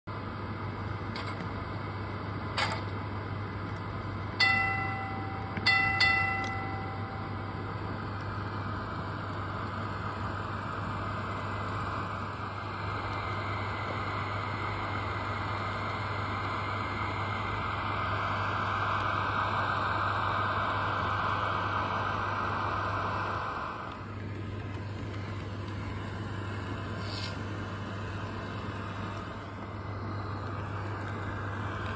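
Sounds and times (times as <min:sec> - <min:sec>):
constant low hum: 0:00.1 - 0:31.9
model tram running sound: 0:00.3 - 0:31.9
tram bell ringing: 0:04.4 - 0:08.2.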